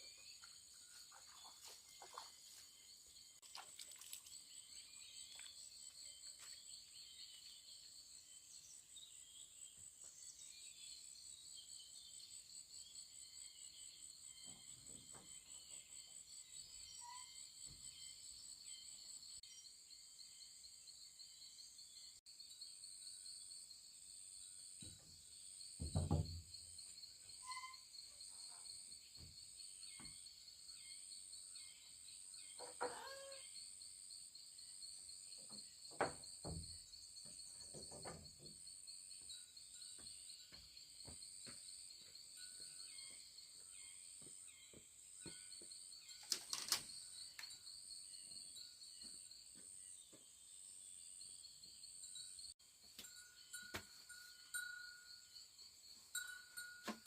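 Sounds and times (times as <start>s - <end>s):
soft knocks: 25.8s - 26.5s
insects trilling: 25.9s - 31.0s, 31.6s - 49.1s.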